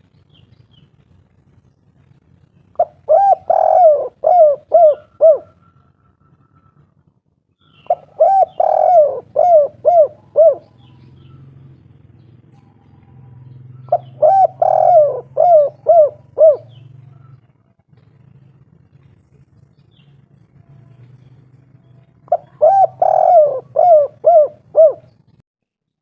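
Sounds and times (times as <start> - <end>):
dove cooing: 2.7 - 6.8, 7.7 - 17.6, 22.1 - 25.4.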